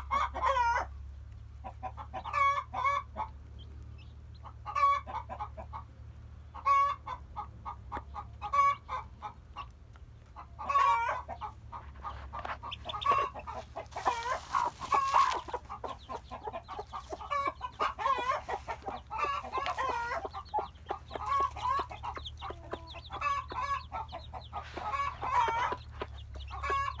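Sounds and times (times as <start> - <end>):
chickens clucking: 0.0 - 27.0
steady low hum: 11.2 - 27.0.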